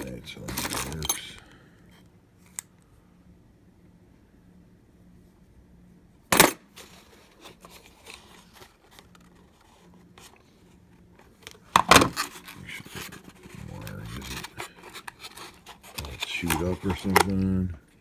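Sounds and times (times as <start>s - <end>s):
rubbing and scraping: 11.8s - 17.6s.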